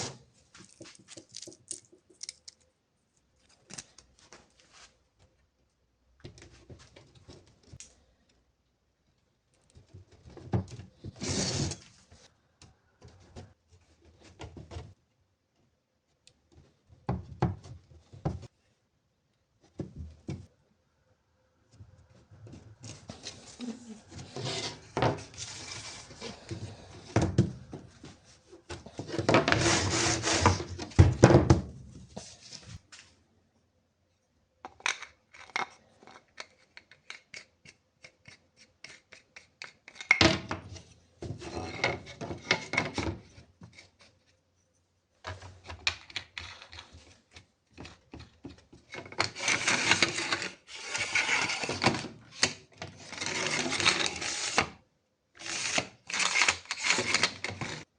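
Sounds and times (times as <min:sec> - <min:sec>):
rubbing and scraping on wood: 0:22.3 - 0:31.0, 0:46.5 - 0:54.7.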